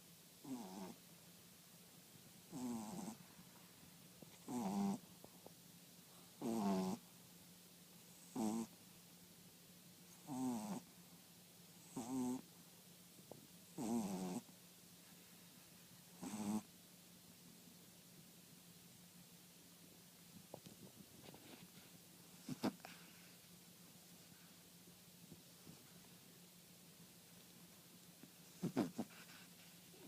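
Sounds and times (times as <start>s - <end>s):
dog snoring: 0.4s - 1.0s, 2.5s - 3.2s, 4.3s - 5.0s, 6.4s - 7.0s, 8.1s - 8.8s, 10.1s - 10.9s, 11.8s - 12.5s, 13.7s - 14.5s, 16.1s - 16.7s, 22.3s - 23.1s, 28.4s - 29.5s.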